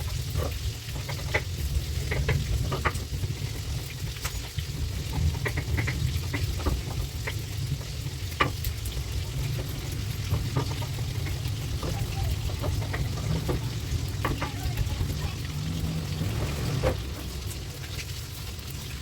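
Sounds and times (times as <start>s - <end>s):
utensil clicking against pan: 0.0s - 15.2s
food sizzling in a pan: 0.0s - 19.0s
low rumble: 6.6s - 19.0s.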